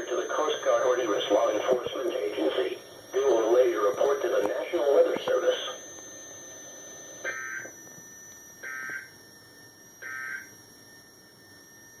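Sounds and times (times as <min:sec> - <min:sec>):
faint radio hiss: 0:00.0 - 0:07.3
buzzy digital data tones: 0:00.0 - 0:12.0.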